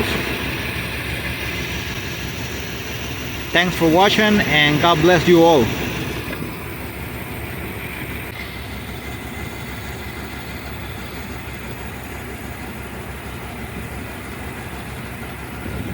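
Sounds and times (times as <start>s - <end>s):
truck engine idling: 0.0s - 15.9s.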